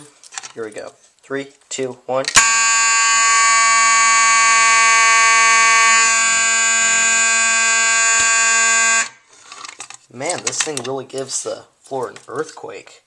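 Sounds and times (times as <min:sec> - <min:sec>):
fire alarm horn: 0:02.4 - 0:09.2.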